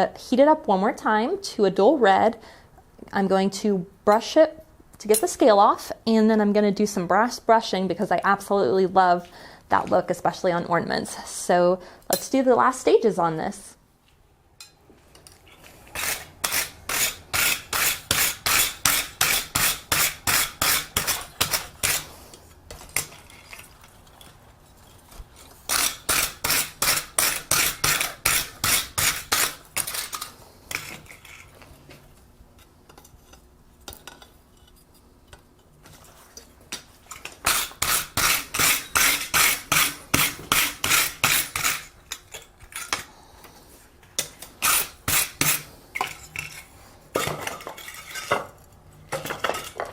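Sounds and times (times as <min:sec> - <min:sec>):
wire brush scrubbing steel: 0:15.8 - 0:22.3, 0:25.7 - 0:31.5, 0:37.4 - 0:42.0, 0:44.6 - 0:45.7.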